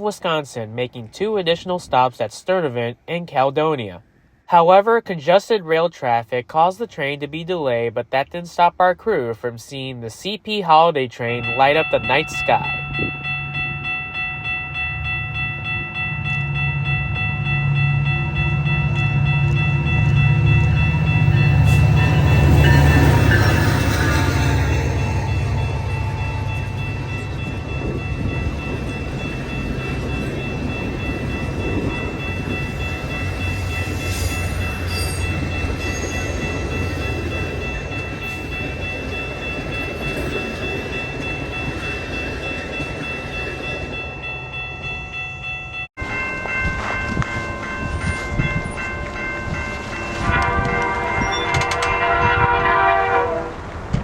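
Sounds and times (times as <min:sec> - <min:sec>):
diesel locomotive rumbling: 0:11.4 - 0:54.0
train horn: 0:50.2 - 0:53.7.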